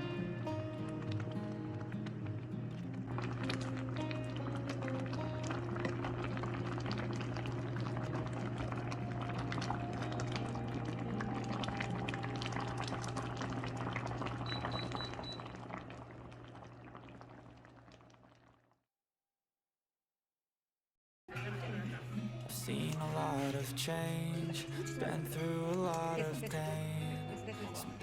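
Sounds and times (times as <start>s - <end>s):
soup boiling with bubbling pops: 0.3s - 18.9s.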